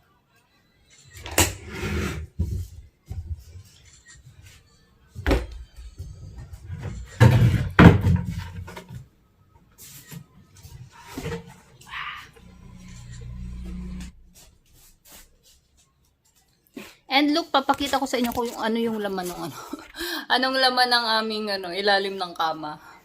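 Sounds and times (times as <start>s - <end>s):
bed frame parts knocking: 6.3s - 9.0s.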